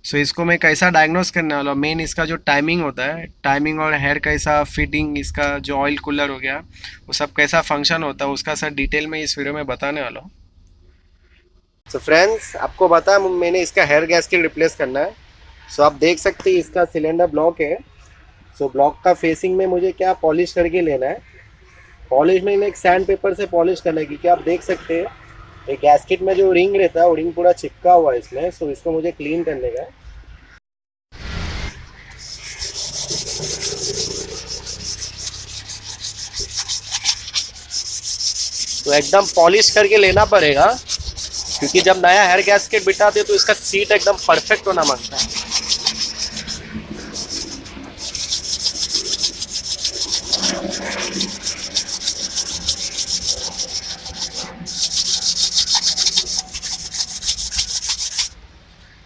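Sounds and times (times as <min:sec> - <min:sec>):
sandpaper scrubbing metal: 0:31.9 - 0:58.4.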